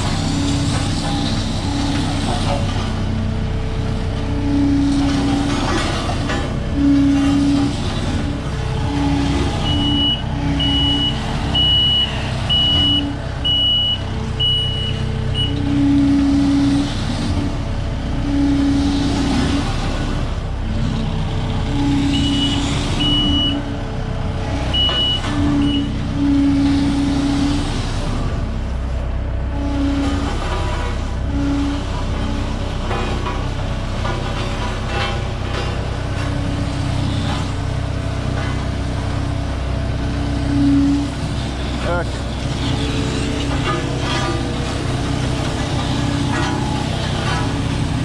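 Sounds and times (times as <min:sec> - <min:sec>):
diesel engine running: 0:00.0 - 0:48.0
reversing alarm beeping: 0:06.7 - 0:19.6, 0:21.7 - 0:23.8, 0:24.4 - 0:28.1, 0:40.1 - 0:42.0.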